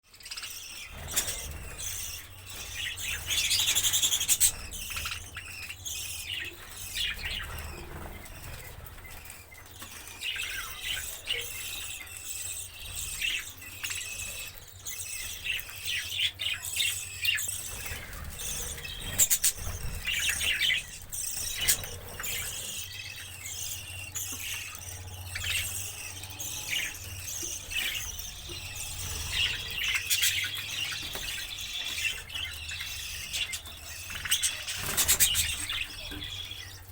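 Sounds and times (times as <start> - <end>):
parrots chirping and squealing: 0.1 - 36.9.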